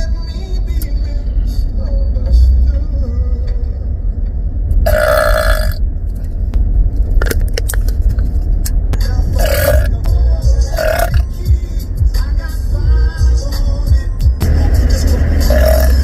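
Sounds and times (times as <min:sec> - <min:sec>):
steady low rumble: 0:00.0 - 0:16.0
person burping: 0:04.9 - 0:05.8, 0:09.4 - 0:09.9, 0:10.8 - 0:11.2, 0:15.5 - 0:16.0.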